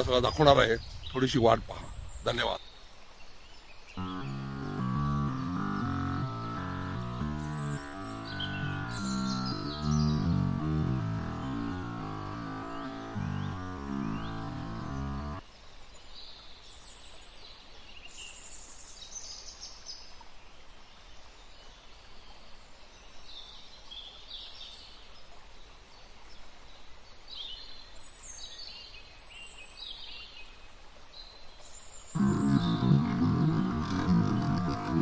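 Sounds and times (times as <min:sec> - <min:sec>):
wild birds chirping: 0:00.0 - 0:15.5, 0:31.8 - 0:35.0
faint background hiss: 0:00.0 - 0:35.0.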